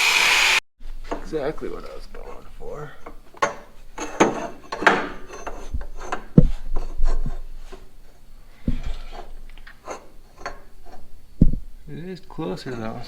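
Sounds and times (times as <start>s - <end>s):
dull thumps: 8.6s - 9.0s, 11.4s - 11.8s.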